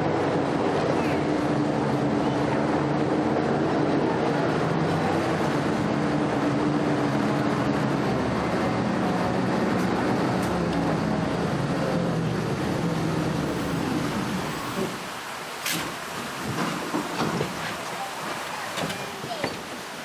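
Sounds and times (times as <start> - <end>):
amphibious truck engine running: 0.0 - 15.5.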